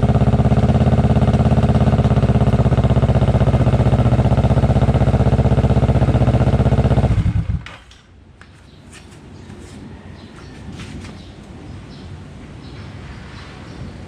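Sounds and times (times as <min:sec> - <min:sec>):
motorcycle engine idling: 0:00.0 - 0:07.7.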